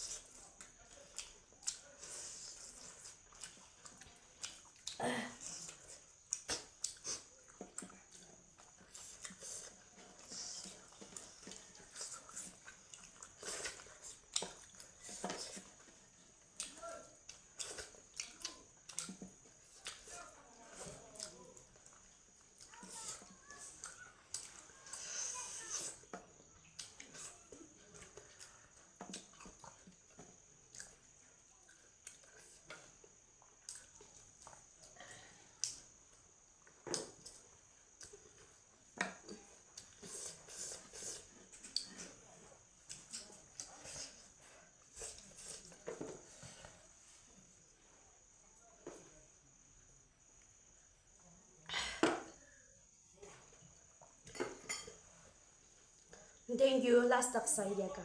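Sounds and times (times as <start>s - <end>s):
person chewing with wet smacks: 0.0s - 48.0s, 53.1s - 56.5s.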